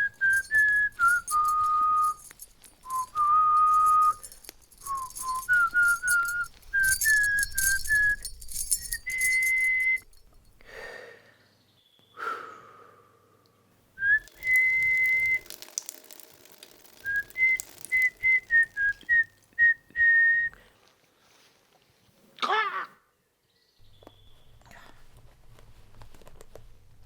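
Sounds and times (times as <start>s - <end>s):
person whistling a tune: 0.0s - 10.2s, 14.0s - 15.6s, 17.0s - 20.6s.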